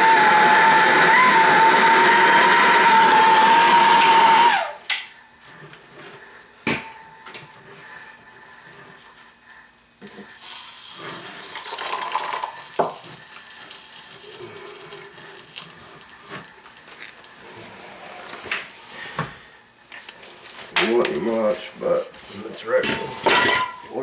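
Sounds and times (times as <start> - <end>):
metal clinks and scraping: 22.2 - 23.9.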